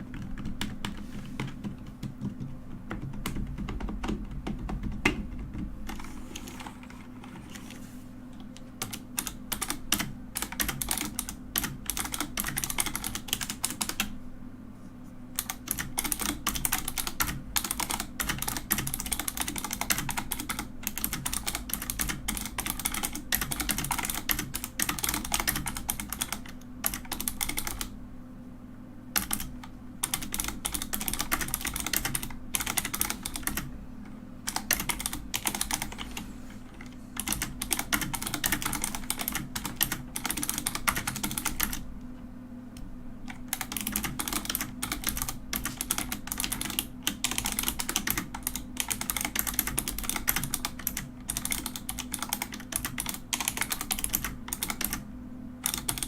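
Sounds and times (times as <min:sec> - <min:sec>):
mechanical keyboard typing: 0:00.0 - 0:07.8, 0:08.6 - 0:14.1, 0:15.4 - 0:28.0, 0:29.2 - 0:33.7, 0:34.5 - 0:41.8, 0:43.3 - 0:55.0, 0:55.6 - 0:56.0.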